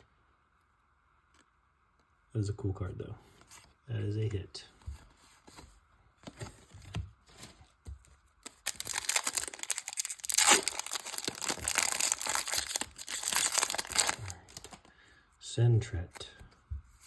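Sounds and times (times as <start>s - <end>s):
foil wrapper tearing and crinkling: 8.4s - 14.8s.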